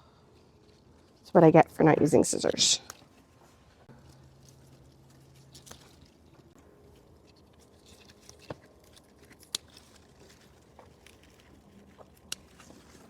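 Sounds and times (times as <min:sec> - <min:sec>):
plant rustling: 0:02.5 - 0:13.0
tomato stems snapping: 0:05.2 - 0:06.1, 0:07.6 - 0:13.0.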